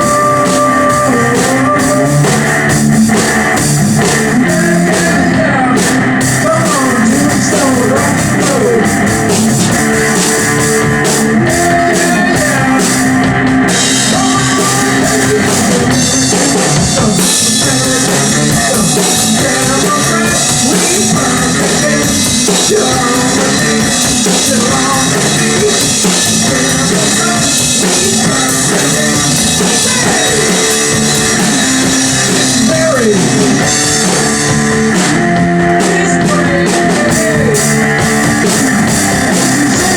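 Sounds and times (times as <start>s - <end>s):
rock band playing: 0.0s - 39.9s.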